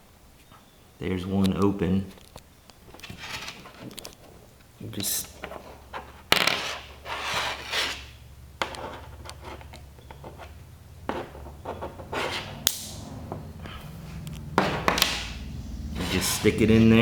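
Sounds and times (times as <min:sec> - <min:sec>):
plastic and wire rustling: 0:02.1 - 0:15.4.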